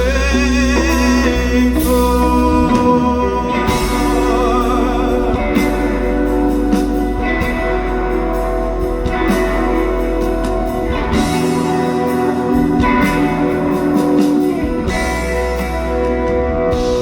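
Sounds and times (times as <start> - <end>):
bass line: 0.0 - 17.0
guitar chords: 0.0 - 17.0.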